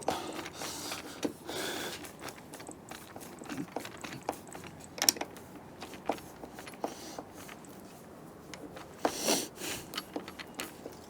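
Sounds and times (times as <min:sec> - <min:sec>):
metal hardware clicking: 0:03.7 - 0:06.9.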